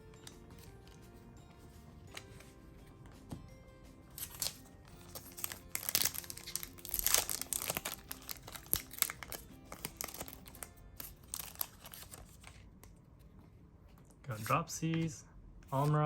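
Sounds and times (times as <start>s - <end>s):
background music: 0.0s - 12.4s
foil wrapper crinkling and tearing: 4.2s - 12.5s.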